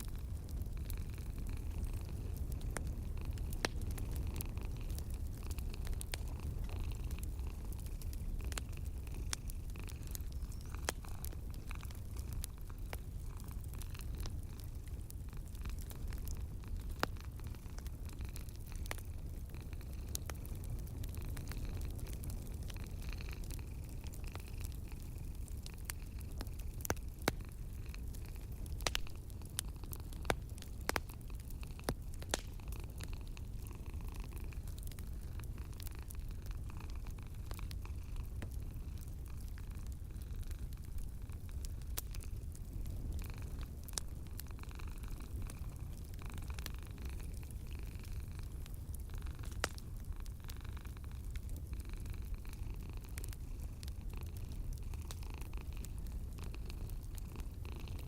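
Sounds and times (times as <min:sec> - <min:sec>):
cat purring softly: 0:00.0 - 0:58.0
wood fire crackling: 0:00.0 - 0:58.0.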